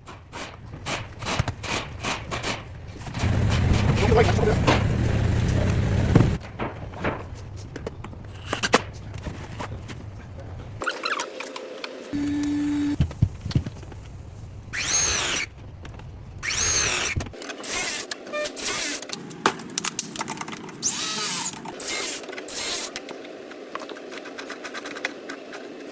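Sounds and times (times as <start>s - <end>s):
cordless power tool whine: 14.8s - 15.5s, 16.4s - 19.0s, 20.8s - 23.0s.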